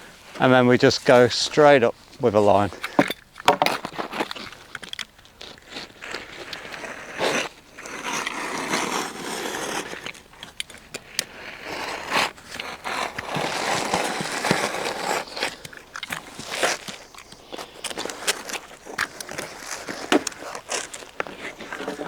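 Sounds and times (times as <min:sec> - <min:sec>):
roofing felt being cut: 0:05.8 - 0:22.0.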